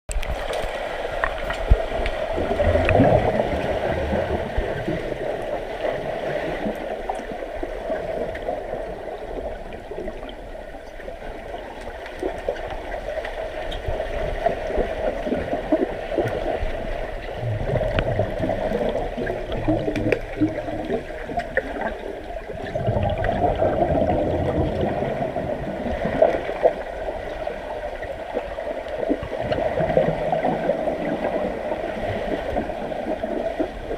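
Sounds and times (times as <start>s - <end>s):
pool water churning and gurgling: 0.1s - 33.9s.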